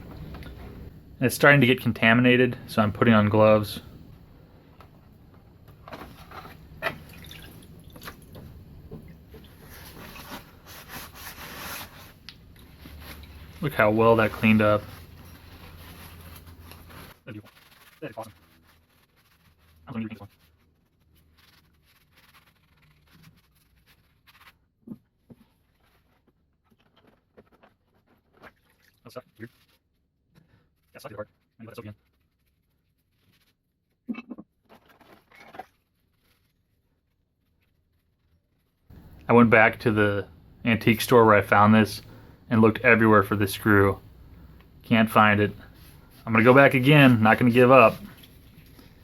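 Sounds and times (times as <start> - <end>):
liquid dripping and trickling: 7.0 - 9.6.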